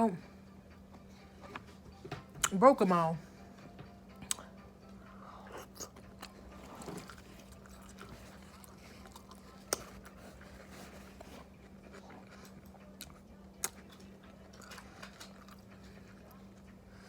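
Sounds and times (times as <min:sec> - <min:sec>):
faint steady hum: 0:00.0 - 0:17.0
chewing and crunching: 0:05.2 - 0:17.0.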